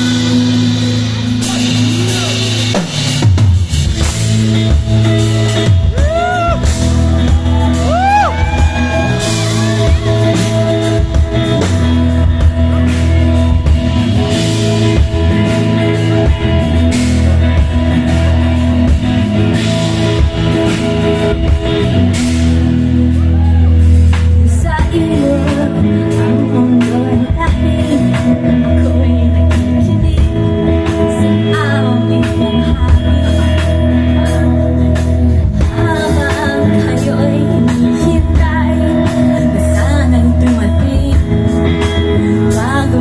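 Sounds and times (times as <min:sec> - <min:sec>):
live pop-rock band playing: 0:00.0 - 0:43.0
person singing: 0:05.1 - 0:17.9, 0:24.4 - 0:43.0.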